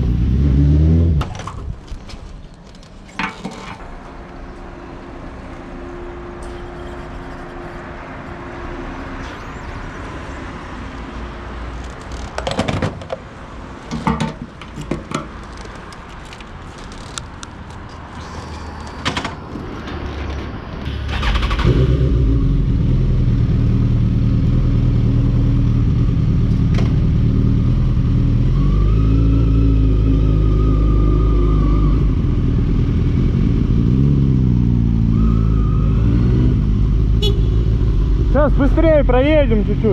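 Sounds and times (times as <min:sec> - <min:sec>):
clatters and knocks: 0:01.2 - 0:03.9, 0:11.8 - 0:13.3, 0:13.9 - 0:17.9
steady background noise: 0:01.2 - 0:21.6.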